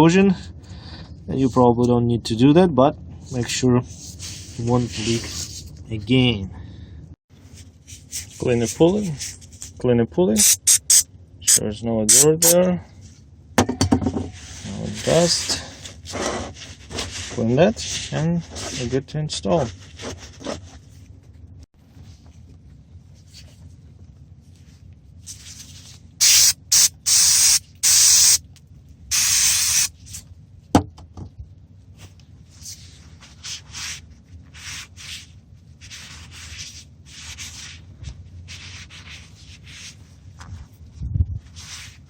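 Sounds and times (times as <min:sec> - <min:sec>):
cleaner spray hissing: 0:10.4 - 0:12.5, 0:26.2 - 0:28.4, 0:29.1 - 0:29.9.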